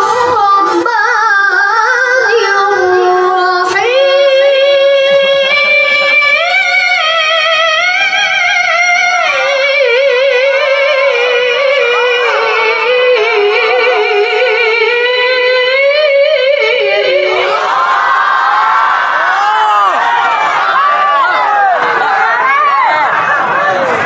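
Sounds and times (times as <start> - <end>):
high voice reciting melismatically: 8.5 - 17.5.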